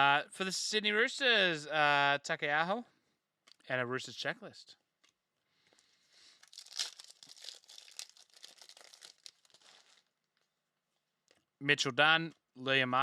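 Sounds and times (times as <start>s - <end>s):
card pack wrapper tearing and crinkling: 6.4s - 10.2s.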